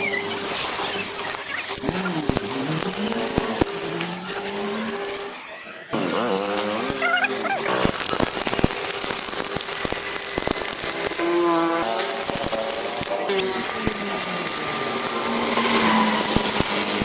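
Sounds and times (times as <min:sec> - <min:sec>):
arc welding crackling: 0:00.0 - 0:17.0
pitched voice or tune: 0:06.8 - 0:07.8.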